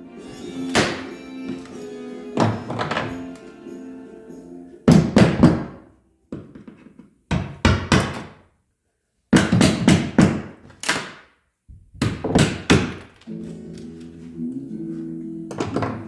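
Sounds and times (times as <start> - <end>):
hammer striking chisel on wood: 0.7 - 1.1, 7.3 - 8.4.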